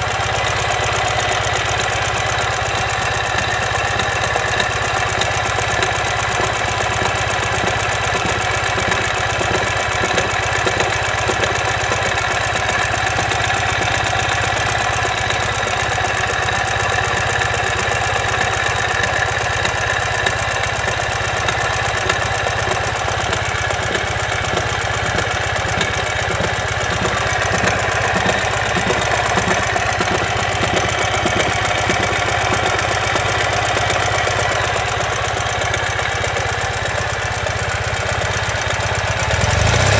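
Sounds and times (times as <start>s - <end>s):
motorcycle engine running: 0.0s - 39.9s
mechanical bearing noise: 1.8s - 34.4s.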